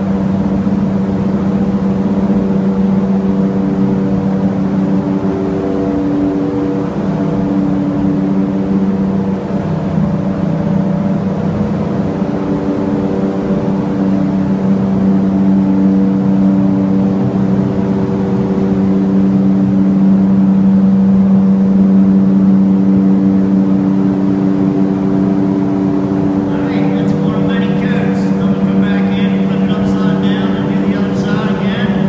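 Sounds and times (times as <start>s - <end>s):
steady machine hum: 0.0s - 32.0s.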